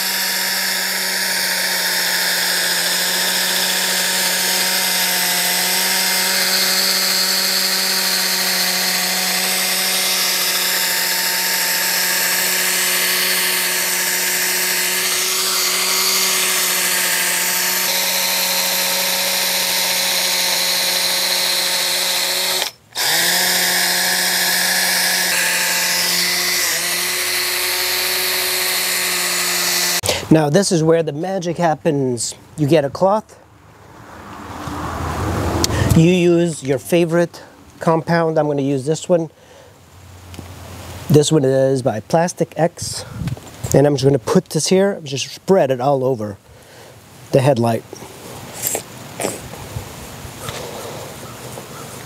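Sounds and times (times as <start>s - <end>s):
electric drill motor whine: 0.0s - 30.0s.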